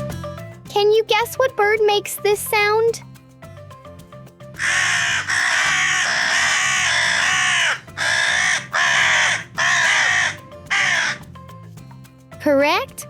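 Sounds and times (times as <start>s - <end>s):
crow cawing: 4.6s - 11.2s.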